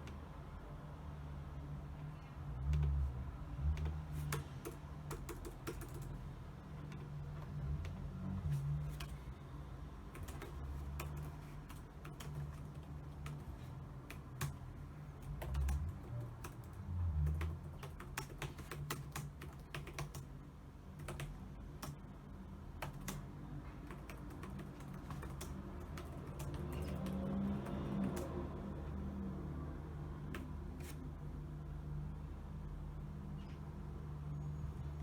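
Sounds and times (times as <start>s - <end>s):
keyboard typing: 3.6s - 8.0s, 8.8s - 9.4s, 10.0s - 29.0s, 30.2s - 31.0s.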